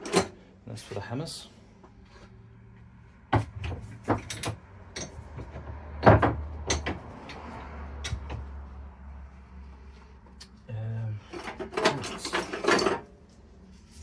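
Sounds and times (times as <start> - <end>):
metal hand tools clanking: 11.3 - 13.1.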